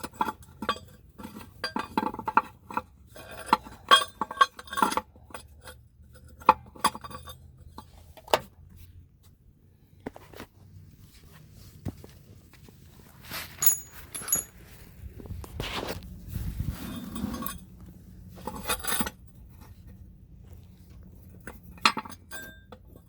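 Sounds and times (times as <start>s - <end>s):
metal clinking and clanking: 13.5s - 14.8s.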